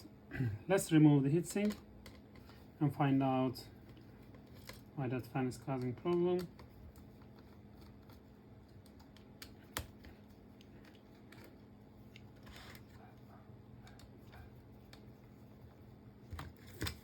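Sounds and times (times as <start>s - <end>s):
faint clicks and taps of small parts: 1.6s - 2.6s, 5.4s - 12.3s.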